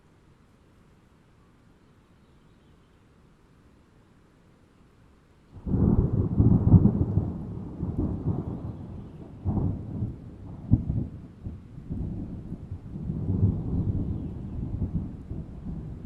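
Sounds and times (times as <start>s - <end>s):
deep thunder rumble: 5.6s - 16.0s
thunderclap: 5.6s - 16.0s.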